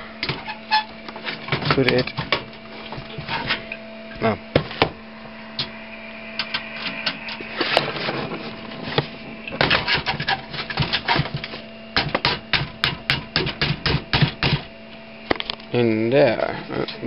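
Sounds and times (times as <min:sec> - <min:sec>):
steady low hum: 0:00.0 - 0:17.0
clicks and knocks of metal and plastic: 0:01.1 - 0:03.6.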